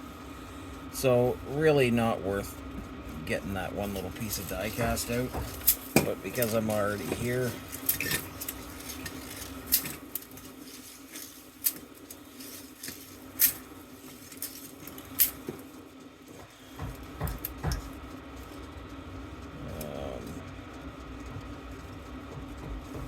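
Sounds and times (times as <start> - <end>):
steady low hum: 0.0 - 23.0
dull thumps: 4.2 - 7.7.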